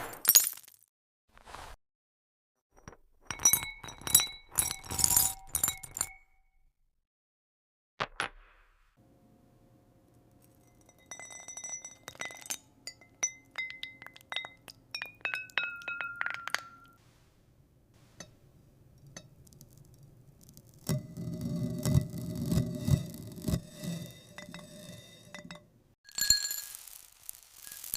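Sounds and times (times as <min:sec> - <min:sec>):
glass clinking and ringing: 0:03.2 - 0:06.4, 0:10.4 - 0:17.0, 0:23.5 - 0:27.0.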